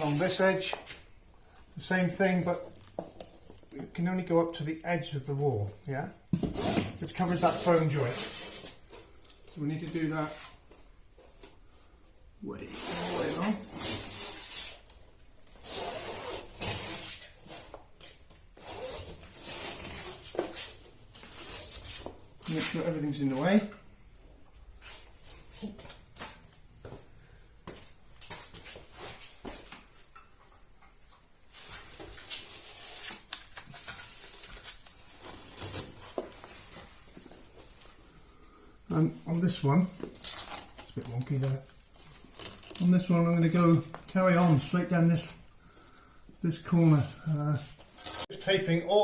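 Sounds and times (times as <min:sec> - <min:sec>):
tape rustling and rubbing: 0:00.0 - 0:01.1, 0:05.6 - 0:11.6, 0:12.6 - 0:23.5, 0:31.1 - 0:38.0, 0:39.9 - 0:45.3, 0:46.8 - 0:48.4
tape unrolling crackle: 0:40.0 - 0:44.8.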